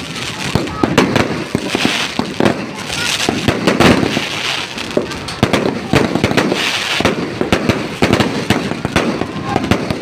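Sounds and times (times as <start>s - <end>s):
fireworks bangs and crackling pops: 0.0s - 10.0s.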